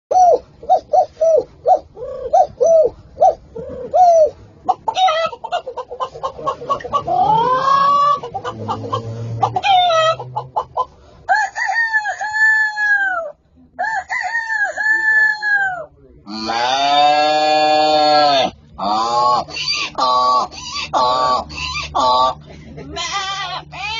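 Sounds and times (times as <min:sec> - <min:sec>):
man imitating chicken clucks: 0:00.1 - 0:10.9, 0:14.3 - 0:23.9
man imitating rooster crows: 0:11.3 - 0:22.4.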